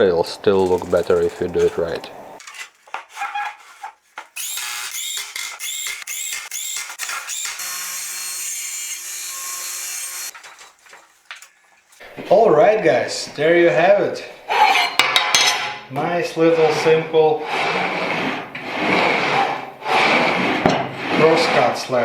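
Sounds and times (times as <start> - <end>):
power drill driving screws: 4.4 - 10.7.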